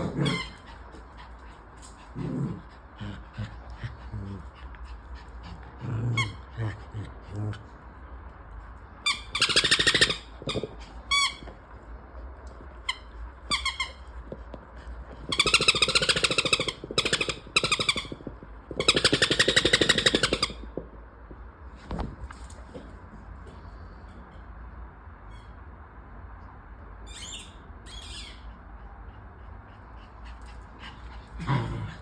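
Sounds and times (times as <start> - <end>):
squeaky toy squeaking: 0.0 - 0.7, 9.1 - 11.5, 12.9 - 14.1, 15.3 - 20.6, 27.1 - 28.4.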